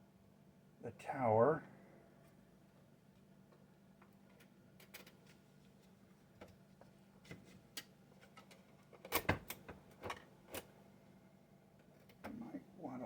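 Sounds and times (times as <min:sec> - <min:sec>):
clicks and knocks of parts: 0:04.3 - 0:05.4.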